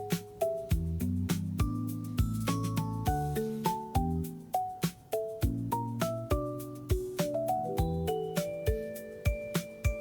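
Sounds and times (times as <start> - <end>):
plucked instrumental music with beat: 0.0 - 10.0.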